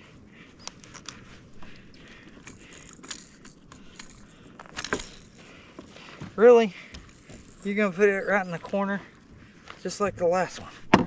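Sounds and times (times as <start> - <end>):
fishing tackle clicking and rattling: 0.6 - 9.2.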